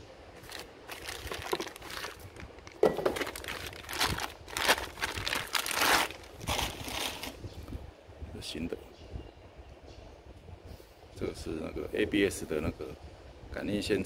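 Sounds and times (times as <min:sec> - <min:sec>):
packaging crinkling and rustling: 0:00.4 - 0:07.4.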